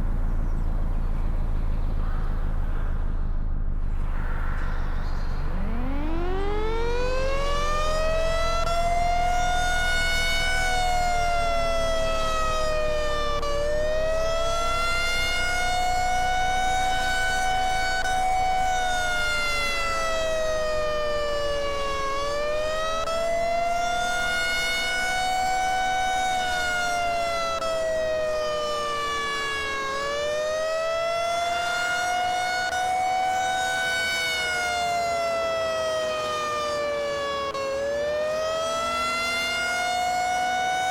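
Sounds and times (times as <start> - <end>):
outdoor warning siren wavering: 4.0 - 40.9.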